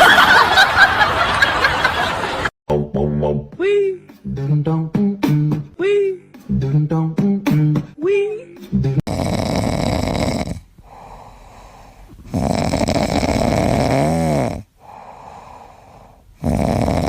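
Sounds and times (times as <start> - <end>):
pet snoring: 9.1 - 11.1, 12.2 - 15.1, 16.4 - 17.0
quiet breaths: 10.6 - 12.4, 14.6 - 16.4.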